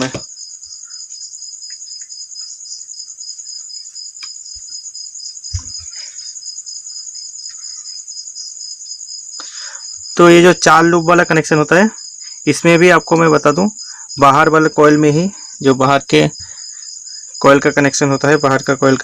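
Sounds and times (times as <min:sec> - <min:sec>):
crickets trilling: 0:00.0 - 0:19.0
dull knock: 0:05.5 - 0:05.9.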